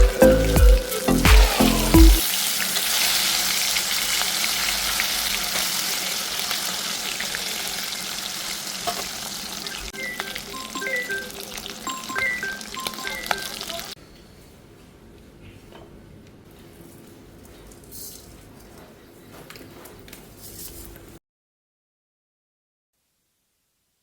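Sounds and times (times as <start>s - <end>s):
music with deep bass: 0.0s - 2.2s
food sizzling in hot oil: 0.0s - 14.0s.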